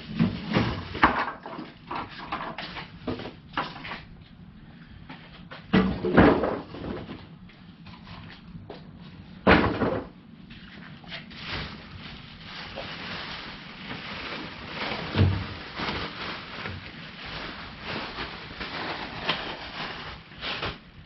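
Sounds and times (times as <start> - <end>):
rustling and scraping handling noise: 6.6 - 9.4, 10.4 - 21.0.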